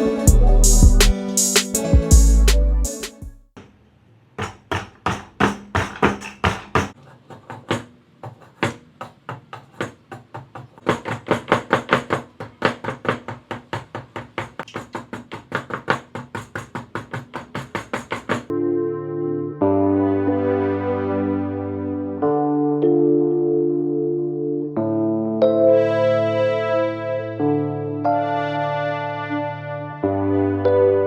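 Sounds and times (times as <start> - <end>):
hand tool striking bamboo: 4.4 - 18.5.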